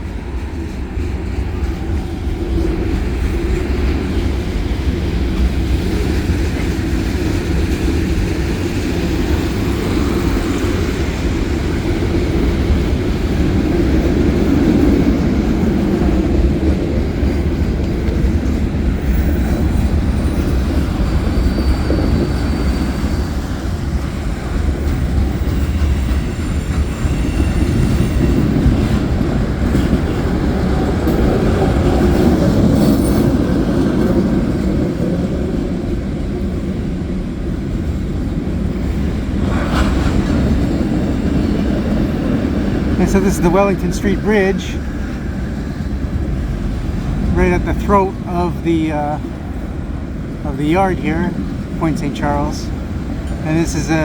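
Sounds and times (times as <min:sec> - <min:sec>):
train wheels rumbling and clacking: 0:00.0 - 0:54.0
high wheel squeal: 0:19.6 - 0:24.0, 0:25.4 - 0:28.7.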